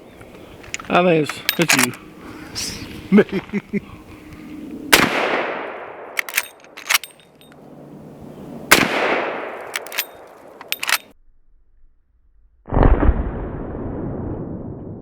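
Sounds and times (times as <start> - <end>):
rifle lever metallic clacks: 0.3 - 2.0, 6.2 - 7.6, 9.6 - 11.1
rifle shots echoing: 4.9 - 7.3, 8.7 - 11.1.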